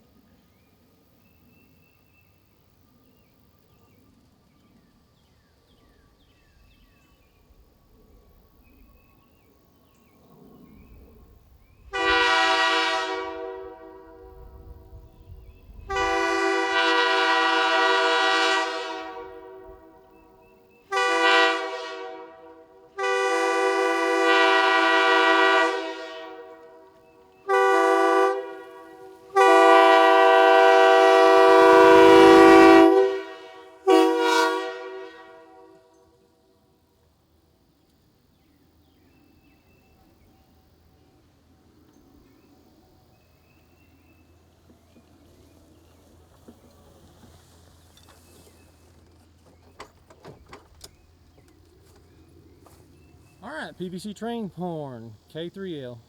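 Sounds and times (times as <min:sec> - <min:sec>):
train horn chord blasts: 0:11.9 - 0:15.1, 0:15.7 - 0:20.2, 0:20.9 - 0:36.1.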